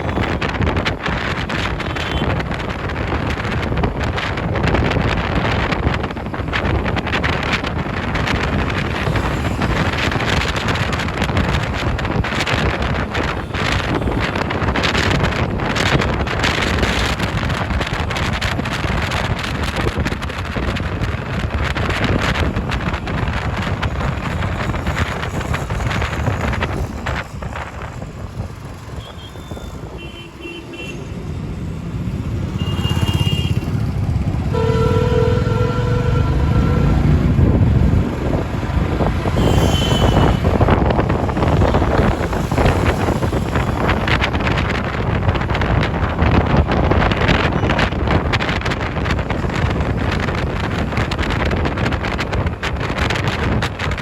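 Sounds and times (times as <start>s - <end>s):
road traffic: 0.0s - 54.0s
wind buffeting microphone: 0.0s - 54.0s
car horn: 1.7s - 2.4s, 29.0s - 31.1s, 32.5s - 33.8s, 34.5s - 37.2s, 39.2s - 42.0s.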